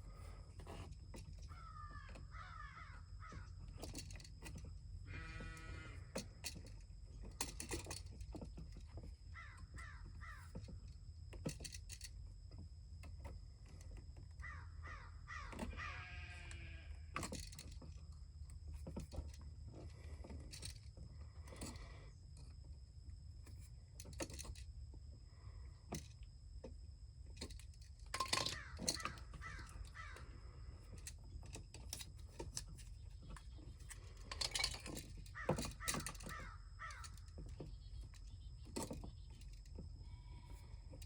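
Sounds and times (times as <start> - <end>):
crows cawing: 1.6 - 3.5, 5.1 - 6.0, 9.4 - 10.4, 14.4 - 16.8, 28.4 - 30.5, 35.4 - 37.2.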